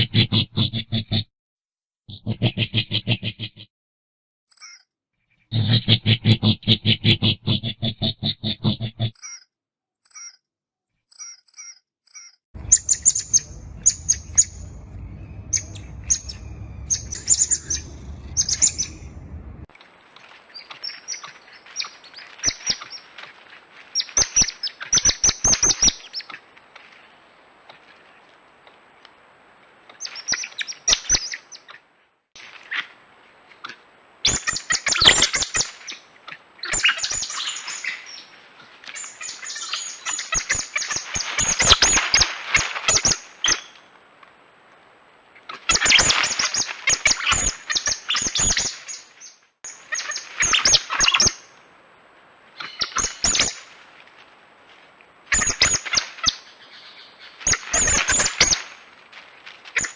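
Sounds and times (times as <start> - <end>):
animals chirping and squeaking: 12.6 - 19.7, 45.7 - 49.0, 49.7 - 51.4
low steady hum: 12.6 - 19.7.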